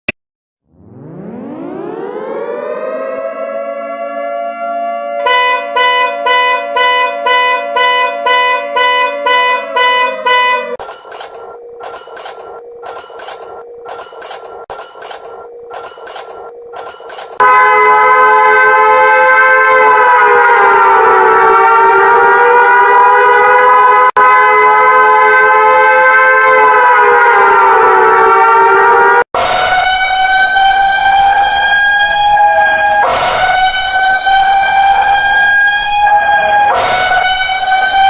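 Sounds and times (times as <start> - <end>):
siren-like alarm tone: 0.7 - 38.0
loud steady multi-pitch tone: 5.2 - 17.4, 29.4 - 38.0
sharp high beeps: 10.8 - 17.4.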